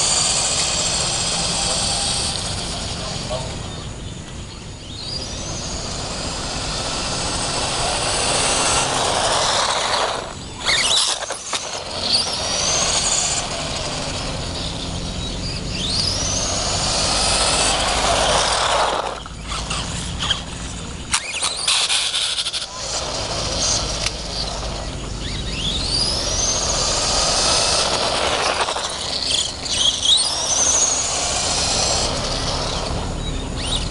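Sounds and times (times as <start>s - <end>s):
high whine rising in pitch: 0.0s - 33.9s
vehicle running noise: 0.0s - 33.9s.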